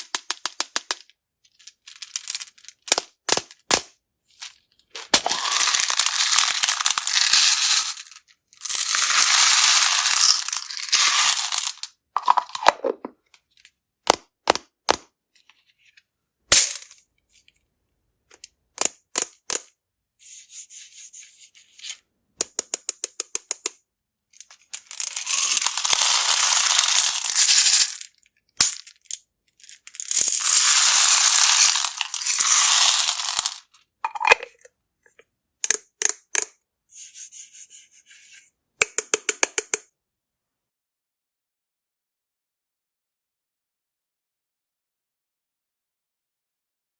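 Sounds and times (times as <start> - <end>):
candies clattering into container: 0.0 - 13.1, 24.4 - 36.5.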